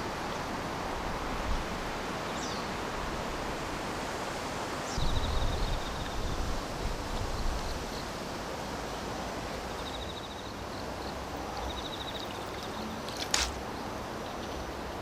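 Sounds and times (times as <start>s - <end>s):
steady hiss of wind or water: 0.0s - 15.0s
sharp click: 13.2s - 13.6s.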